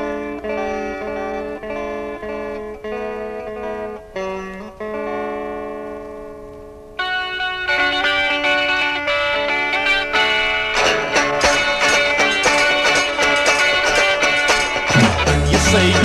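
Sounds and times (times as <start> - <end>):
sustained electric guitar chords: 0.0 - 16.0
rock band playing: 7.2 - 16.0.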